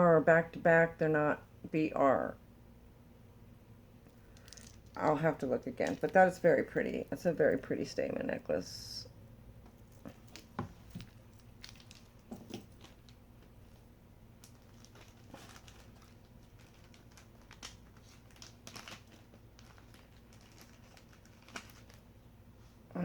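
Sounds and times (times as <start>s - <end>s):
low room hum: 0.0s - 23.0s
jewelry clicking and rustling: 4.1s - 6.4s, 9.6s - 13.8s, 14.4s - 22.0s.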